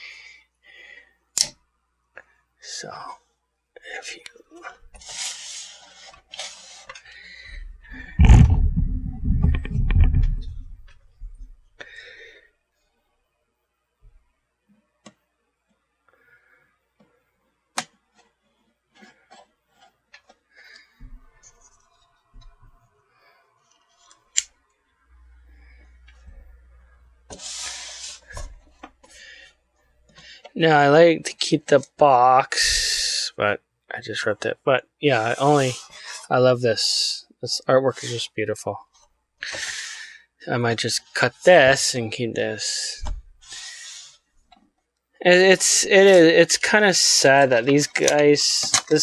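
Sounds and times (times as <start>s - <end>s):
scratchy rasp: 4.6s - 7.0s, 27.3s - 29.5s, 35.2s - 36.3s, 43.4s - 44.3s
deep rumble with clicks: 7.8s - 11.5s.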